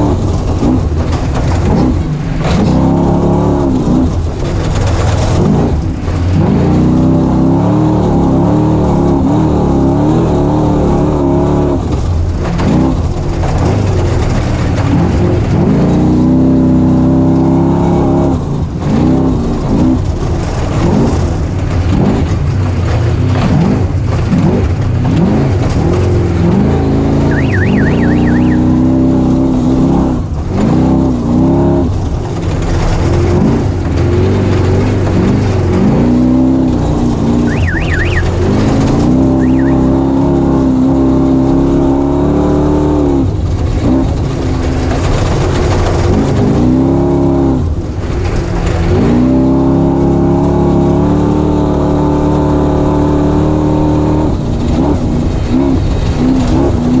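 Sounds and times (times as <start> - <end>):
dirt bike engine revving: 23.4 - 31.8, 33.0 - 42.8.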